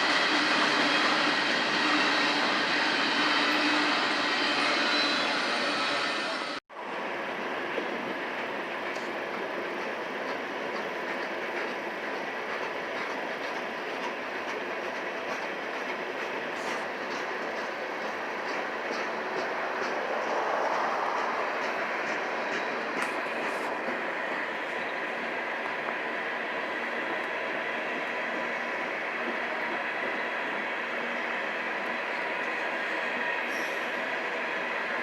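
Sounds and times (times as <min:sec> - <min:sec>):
train wheels rumbling: 0:00.0 - 0:35.0
clickety-clack over rail joints: 0:07.4 - 0:35.0.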